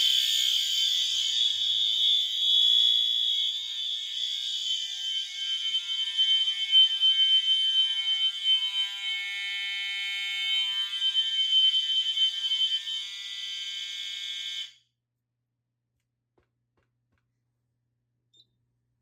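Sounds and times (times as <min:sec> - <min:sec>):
fire alarm horns blaring: 0:00.0 - 0:14.8.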